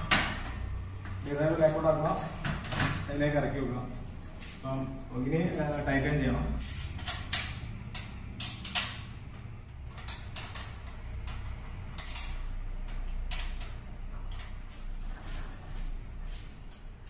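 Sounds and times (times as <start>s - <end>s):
spanner metal clicks and creaks: 5.5s - 14.6s.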